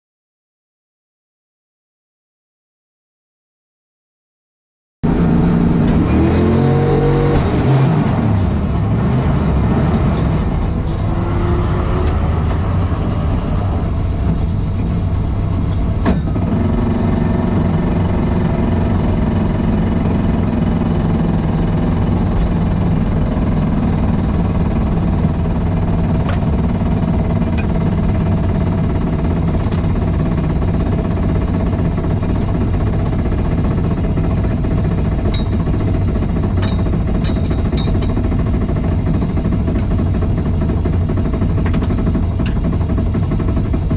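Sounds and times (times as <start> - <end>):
car engine revving: 5.0 - 43.9.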